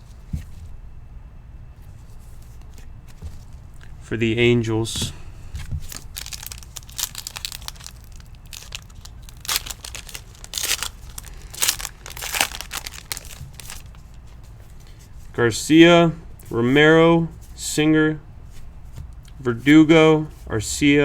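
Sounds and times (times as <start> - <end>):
card pack wrapper crinkling: 5.8 - 14.2
sharp wrapper rips: 5.8 - 14.2.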